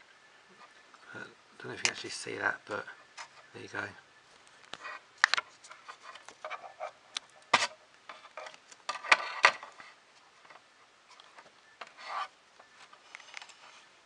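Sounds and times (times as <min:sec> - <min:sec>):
light rubbing and rustling: 0:04.4 - 0:14.0.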